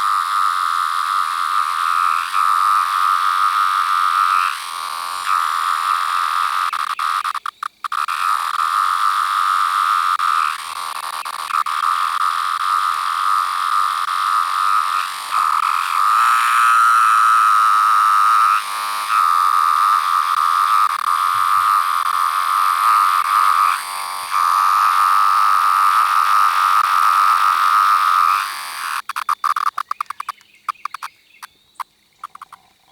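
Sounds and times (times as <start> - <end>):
cicada buzzing: 0.0 - 31.2, 32.2 - 32.9
crackling clicks: 6.7 - 8.7, 28.1 - 31.5, 32.2 - 32.7.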